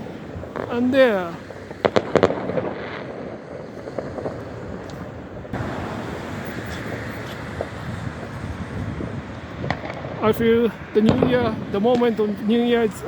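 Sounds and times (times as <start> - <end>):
traffic noise: 0.0 - 13.0
wind rushing: 0.0 - 13.0
distant firework pops: 0.5 - 5.7, 6.5 - 10.2, 11.1 - 12.1.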